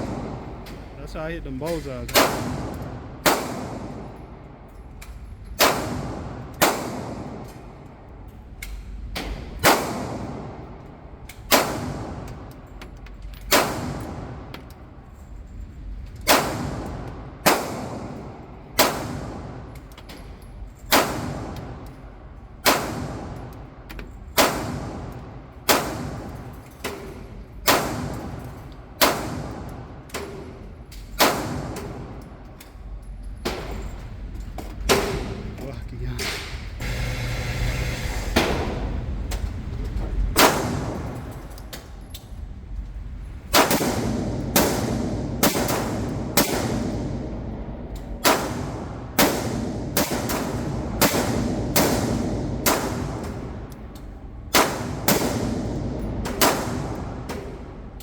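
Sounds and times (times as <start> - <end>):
gunshots with echo: 0.0 - 4.1, 5.6 - 7.5, 16.3 - 19.7, 40.4 - 41.3, 43.5 - 47.5, 48.2 - 53.6, 54.5 - 57.7.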